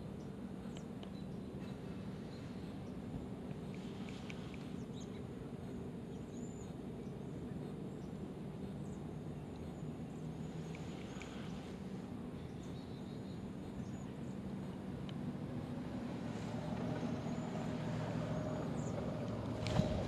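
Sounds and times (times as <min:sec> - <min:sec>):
low outdoor background noise: 0:00.0 - 0:20.0
faint high bird chirps: 0:12.3 - 0:14.8.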